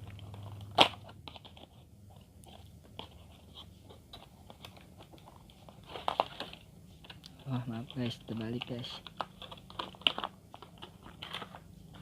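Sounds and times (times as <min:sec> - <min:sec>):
packaging crackling and rustling: 0:00.0 - 0:12.0
parcel packaging ripping: 0:07.2 - 0:12.0.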